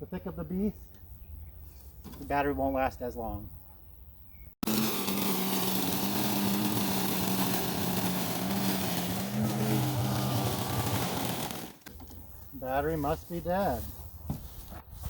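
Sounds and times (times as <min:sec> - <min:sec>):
blade cutting grass hiss: 0:04.6 - 0:11.8
electric lawn mower running: 0:04.6 - 0:11.9.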